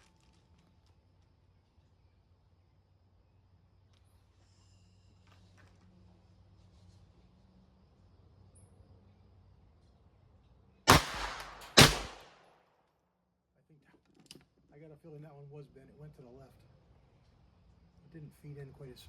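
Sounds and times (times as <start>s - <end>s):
pistol shots with ring-out: 10.9s - 12.6s.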